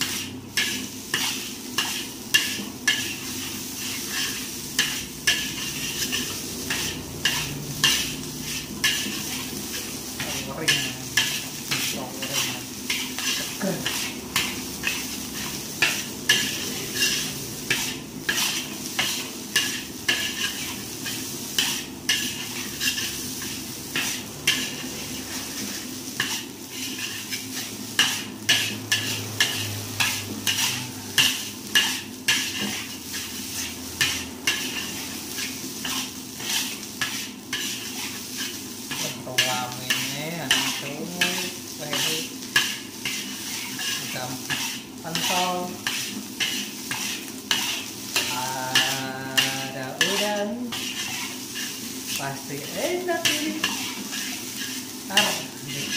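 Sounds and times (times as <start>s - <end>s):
food sizzling: 0.0s - 55.9s
spatula scraping a wok: 0.0s - 55.9s.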